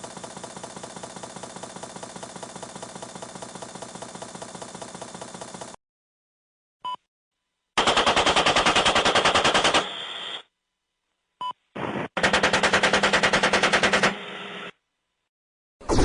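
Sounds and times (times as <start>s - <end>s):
automatic machine-gun fire: 0.0s - 5.8s, 7.8s - 10.0s, 11.9s - 14.3s.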